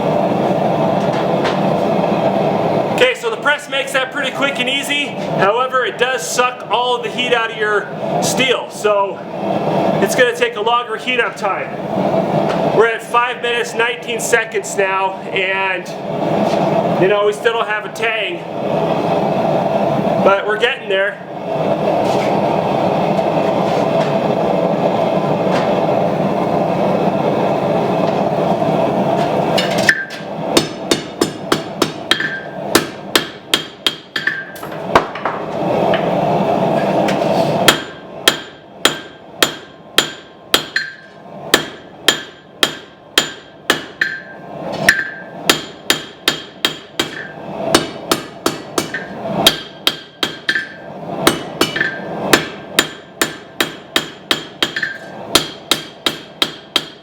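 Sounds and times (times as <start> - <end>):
steady rushing noise: 0.0 - 57.0
hammer striking steel on anvil: 29.6 - 35.3, 37.7 - 57.0.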